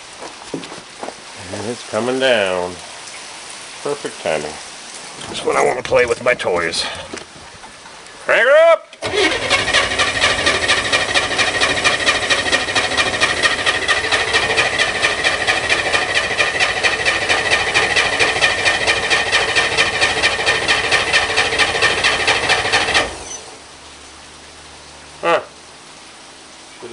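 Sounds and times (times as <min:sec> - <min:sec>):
engine cranking on starter: 0:09.0 - 0:23.6.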